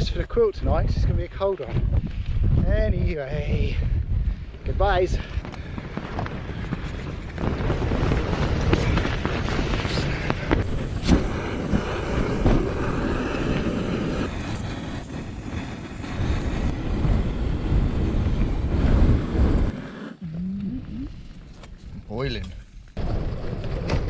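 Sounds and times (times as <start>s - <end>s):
wind buffeting microphone: 0.0s - 22.4s.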